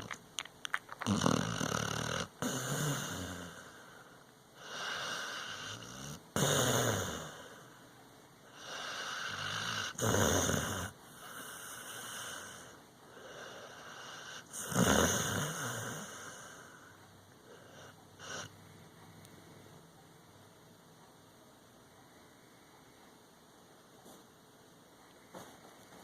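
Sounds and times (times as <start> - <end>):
dog snoring: 1.0 - 7.7, 8.5 - 18.5.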